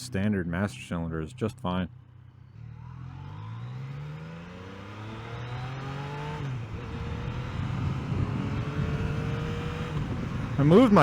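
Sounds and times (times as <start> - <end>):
motorcycle engine accelerating: 1.9 - 11.0.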